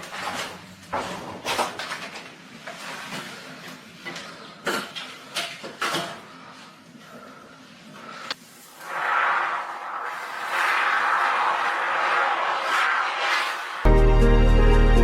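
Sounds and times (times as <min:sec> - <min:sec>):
sharp strokes: 0:08.6 - 0:13.9.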